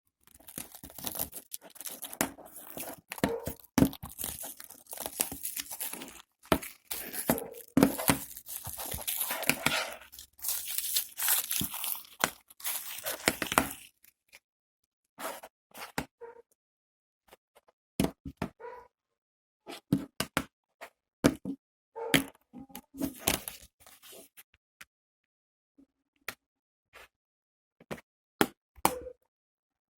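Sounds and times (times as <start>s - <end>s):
plastic crinkling: 0.2s - 14.1s
plastic wrapping tearing: 0.2s - 14.1s.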